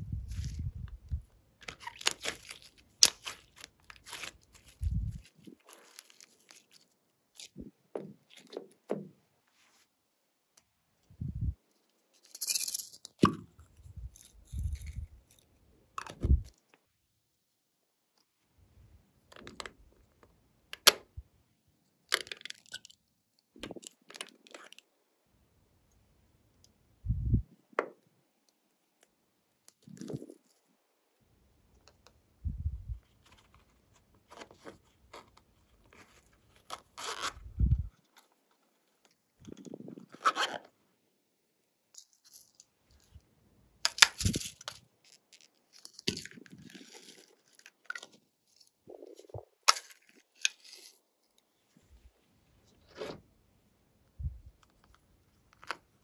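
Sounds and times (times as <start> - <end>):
clicks and crinkles of containers: 43.8 - 51.5.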